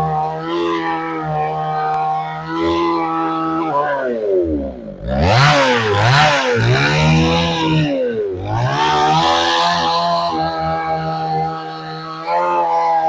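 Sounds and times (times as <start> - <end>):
motorised saw motor: 0.0 - 13.0
blade rasping through wood: 5.0 - 11.6.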